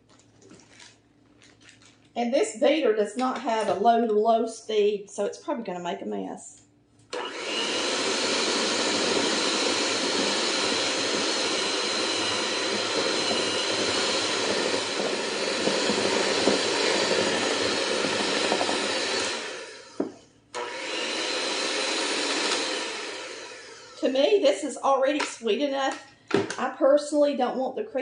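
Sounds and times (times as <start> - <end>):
electric mixer whirring: 7.1 - 24.5.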